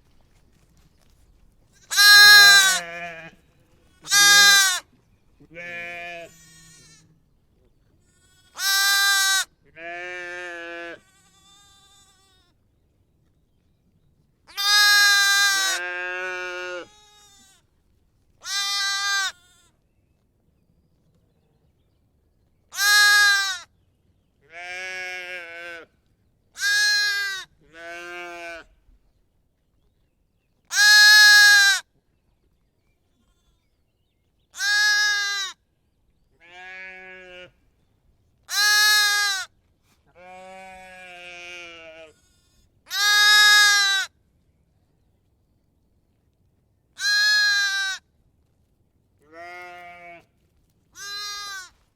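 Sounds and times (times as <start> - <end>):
sheep and goats bleating: 1.9 - 7.2, 8.0 - 12.6, 14.5 - 17.7, 18.4 - 19.8, 22.8 - 23.7, 24.4 - 25.9, 26.6 - 28.7, 30.7 - 31.8, 34.6 - 35.6, 36.4 - 37.6, 38.5 - 39.5, 40.1 - 44.1, 47.0 - 48.0, 49.2 - 50.3, 51.0 - 51.8.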